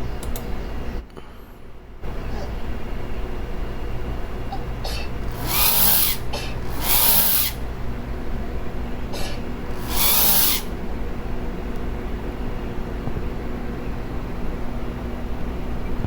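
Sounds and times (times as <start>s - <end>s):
short in-breath: 1.1s - 1.6s
person sneezing: 9.2s - 9.4s.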